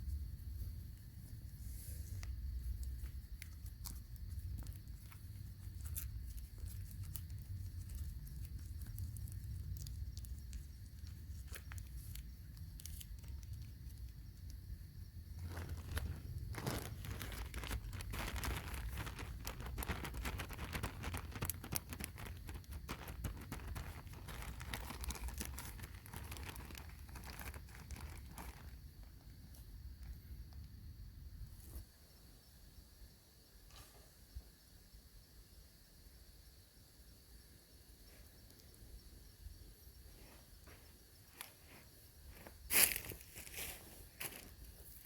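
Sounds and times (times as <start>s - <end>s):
crinkling and crackling: 0.0s - 30.8s, 40.2s - 45.0s.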